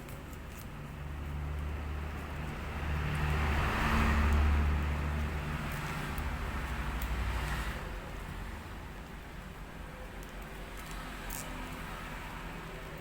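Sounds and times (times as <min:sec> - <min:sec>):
vehicle passing by: 0:01.3 - 0:07.9.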